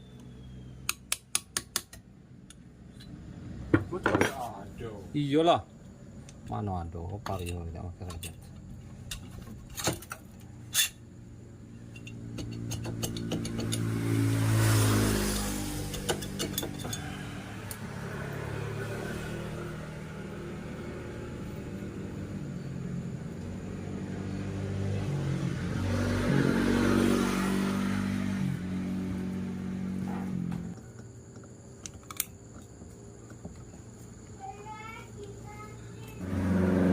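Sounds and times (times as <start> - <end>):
small motorcycle engine revving: 12.2 - 30.8, 36.0 - 36.9.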